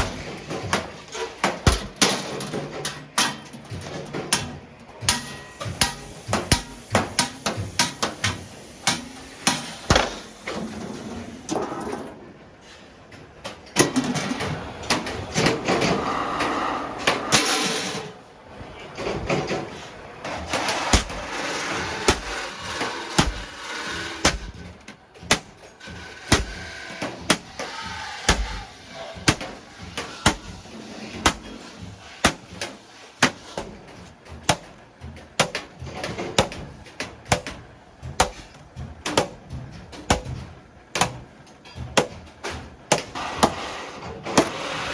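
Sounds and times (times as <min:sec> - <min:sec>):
hammer striking iron plate: 0:01.5 - 0:02.3, 0:04.3 - 0:10.2, 0:20.4 - 0:25.7, 0:26.3 - 0:34.8, 0:36.4 - 0:36.7, 0:37.3 - 0:39.5, 0:40.1 - 0:40.4, 0:41.0 - 0:43.6.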